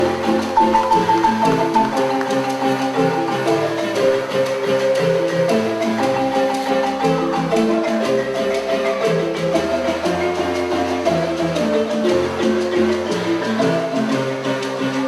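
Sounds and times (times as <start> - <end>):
marimba playing a run of notes: 0.0 - 4.3.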